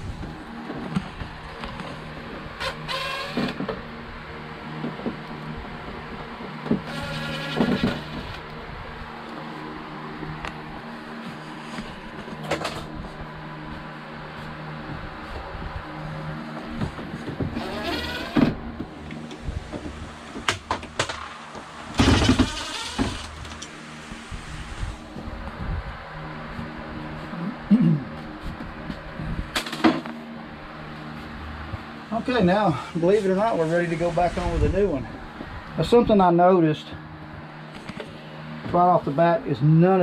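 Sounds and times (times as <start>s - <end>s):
steady low hum: 0.0s - 40.0s
cordless drill whirring: 6.9s - 8.4s, 17.6s - 18.6s
cordless screwdriver whirring: 17.6s - 18.5s.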